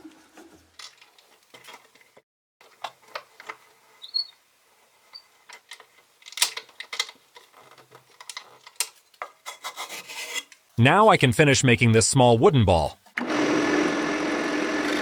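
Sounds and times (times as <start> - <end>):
short high squeak: 4.0 - 4.4
wood and tools clicking: 5.2 - 10.6.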